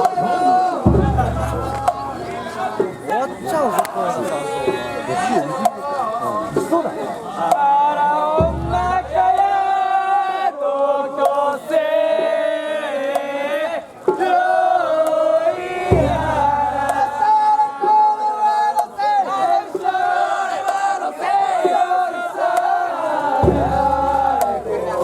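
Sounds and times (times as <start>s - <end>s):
group of voices chanting: 0.0s - 25.0s
deep booms: 0.9s - 2.9s, 8.4s - 9.5s.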